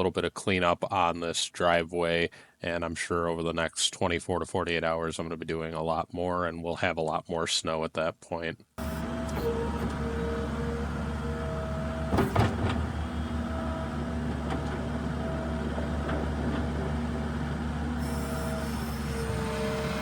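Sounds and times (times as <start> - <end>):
diesel engine running: 8.8 - 20.0.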